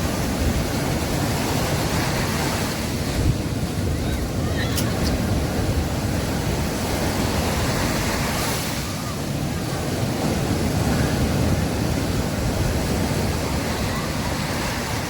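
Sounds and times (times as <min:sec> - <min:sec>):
sea waves breaking on beach: 0:00.0 - 0:15.0.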